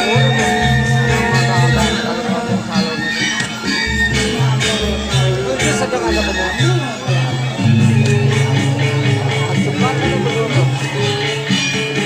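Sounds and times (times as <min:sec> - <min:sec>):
metallophones ringing: 0:07.6 - 0:11.2
deep gong tones: 0:07.6 - 0:11.3.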